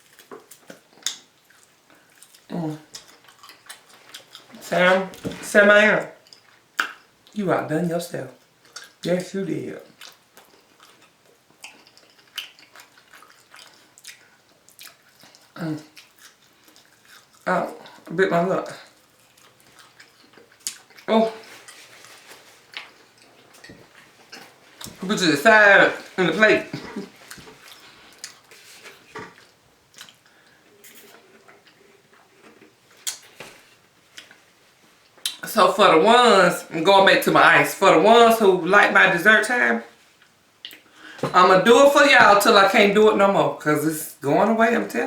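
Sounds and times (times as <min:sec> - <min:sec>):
wet chewing and lip smacking: 0:00.0 - 0:04.6, 0:06.2 - 0:07.4, 0:08.4 - 0:09.0, 0:09.8 - 0:18.1, 0:18.8 - 0:25.0, 0:26.0 - 0:33.4, 0:40.2 - 0:40.9.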